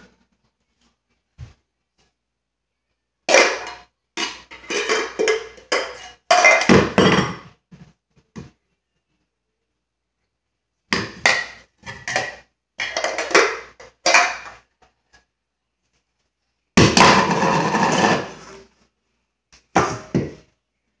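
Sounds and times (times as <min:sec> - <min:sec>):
dishes and utensils clattering: 0:03.3 - 0:07.4, 0:11.9 - 0:14.6.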